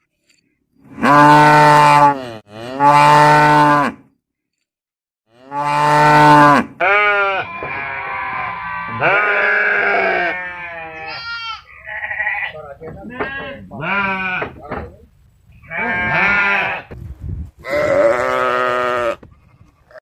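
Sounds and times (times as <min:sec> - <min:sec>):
cow mooing: 0:01.0 - 0:04.0, 0:05.3 - 0:11.1
animal bleating: 0:05.3 - 0:14.6, 0:15.6 - 0:17.0, 0:17.6 - 0:20.0.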